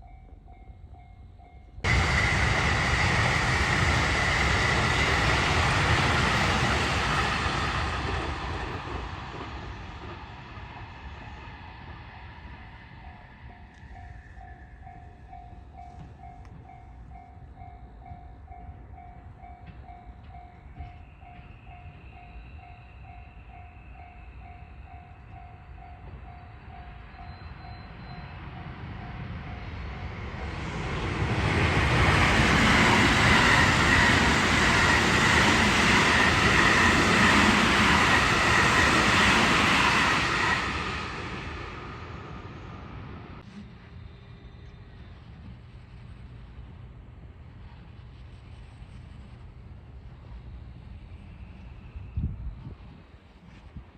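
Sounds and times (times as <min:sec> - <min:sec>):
level-crossing warning bell: 0:00.0 - 0:08.0, 0:12.4 - 0:30.5
train passing: 0:00.0 - 0:53.9.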